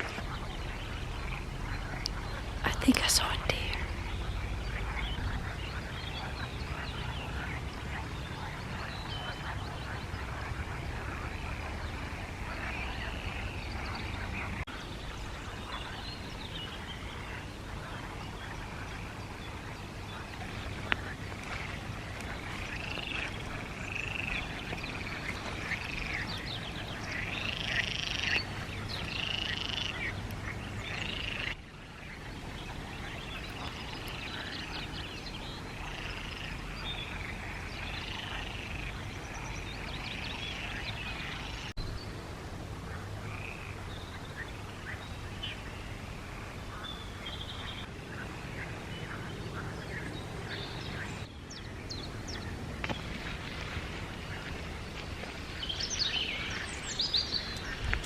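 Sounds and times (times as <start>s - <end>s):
frogs croaking: 0.0s - 41.8s, 42.7s - 58.0s.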